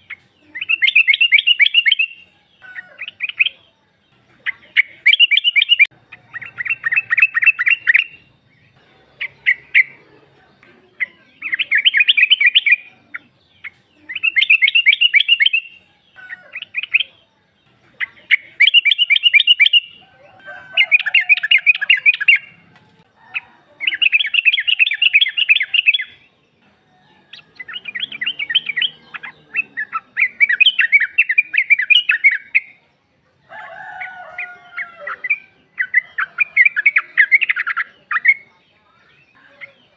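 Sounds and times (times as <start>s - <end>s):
bird fast chattering calls: 0.0s - 3.6s, 4.4s - 8.3s, 11.0s - 17.1s, 17.9s - 20.0s.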